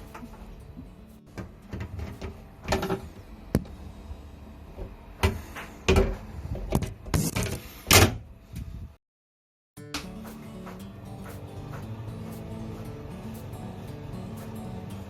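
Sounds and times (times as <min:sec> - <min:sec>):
knocks and clatter of hard objects: 0:01.4 - 0:03.7.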